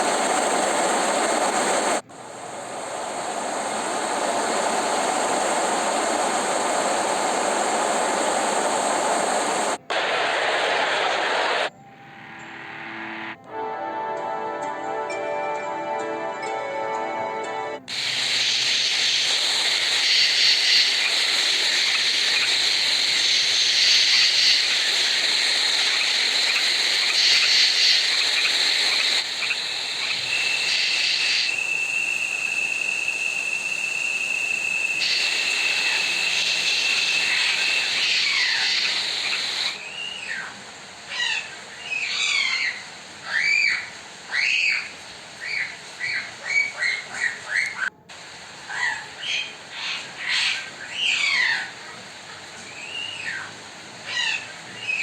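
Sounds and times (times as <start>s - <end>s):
loud steady hiss: 0.0s - 55.0s
high whistle-like tone: 11.6s - 21.0s, 29.4s - 40.2s
birdsong chirping: 17.9s - 47.9s.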